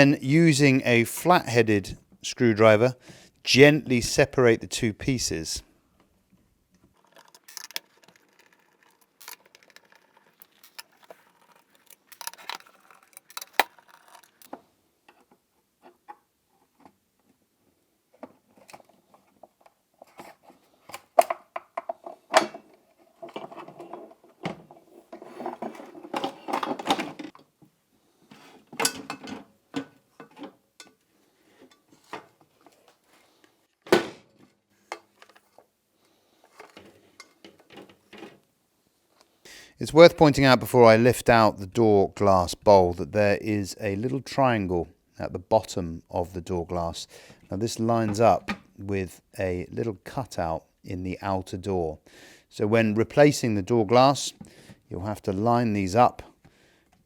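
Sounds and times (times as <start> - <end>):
small metal screws clinking: 7.0 - 14.6.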